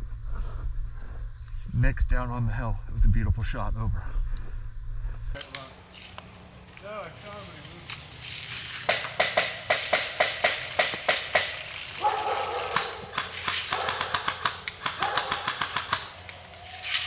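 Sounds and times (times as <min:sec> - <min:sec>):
airsoft gun shots: 0:05.4 - 0:17.0.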